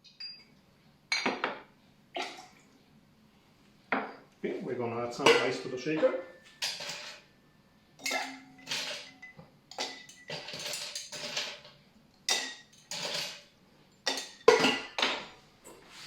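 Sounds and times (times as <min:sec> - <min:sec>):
ice clattering into metal shaker: 0:08.1 - 0:09.2.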